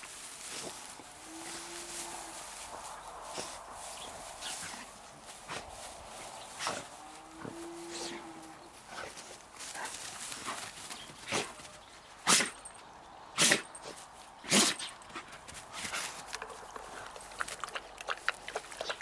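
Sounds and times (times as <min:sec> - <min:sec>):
dog sneezing: 0:12.3 - 0:12.6.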